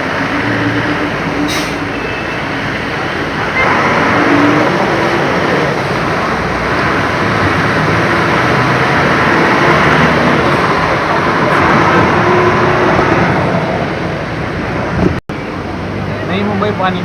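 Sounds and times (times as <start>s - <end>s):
tyres hissing through water: 0.0s - 12.6s
vehicle engines running: 0.0s - 17.0s.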